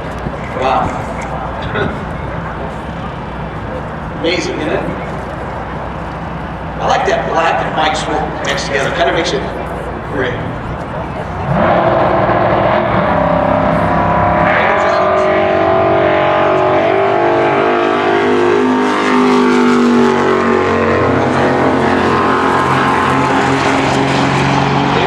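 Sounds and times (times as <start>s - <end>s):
loud racing engines: 0.0s - 25.0s.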